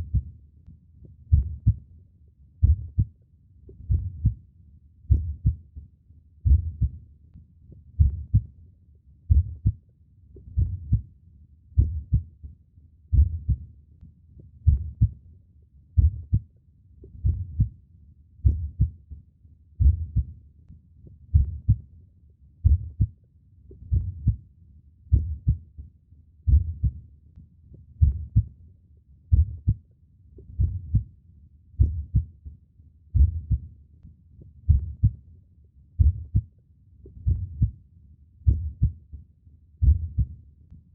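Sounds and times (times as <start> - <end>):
heartbeat thuds: 0.0 - 0.3, 1.3 - 1.8, 2.6 - 3.1, 3.8 - 4.4, 5.1 - 5.6, 6.4 - 7.0, 8.0 - 8.5, 9.3 - 9.8, 10.5 - 11.0, 11.8 - 12.3, 13.1 - 13.6, 14.6 - 15.1, 16.0 - 16.4, 17.1 - 17.7, 18.4 - 19.0, 19.8 - 20.3, 21.3 - 21.8, 22.6 - 23.1, 23.8 - 24.4, 25.1 - 25.6, 26.5 - 27.0, 27.9 - 28.5, 29.3 - 29.8, 30.4 - 31.1, 31.8 - 32.3, 33.1 - 33.7, 34.6 - 35.2, 36.0 - 36.5, 37.1 - 37.8, 38.4 - 39.0, 39.8 - 40.4.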